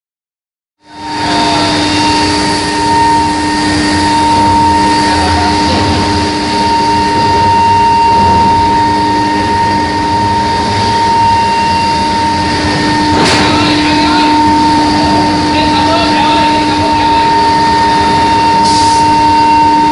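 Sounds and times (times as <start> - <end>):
machine humming: 0.8 - 19.9
constant high tone: 0.9 - 19.9.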